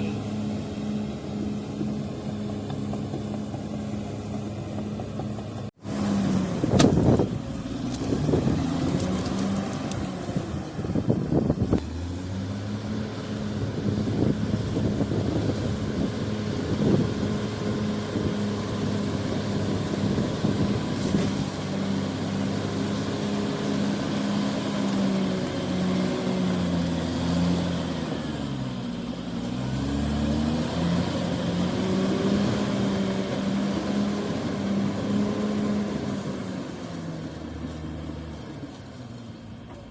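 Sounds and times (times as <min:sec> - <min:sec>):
heavy diesel engine under load: 0:00.0 - 0:39.9.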